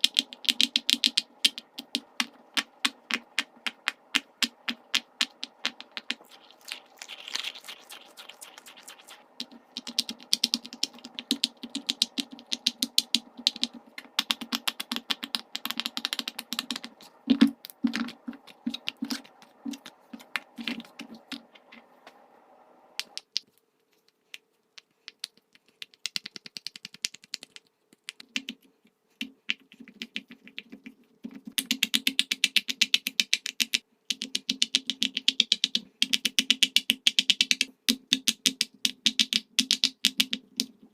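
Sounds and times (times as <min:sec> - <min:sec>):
fidget toy bubbles popping: 0:00.0 - 0:21.5.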